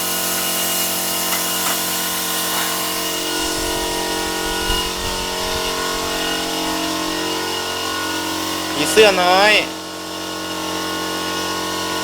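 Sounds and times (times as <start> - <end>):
low rumble: 2.7 - 7.6.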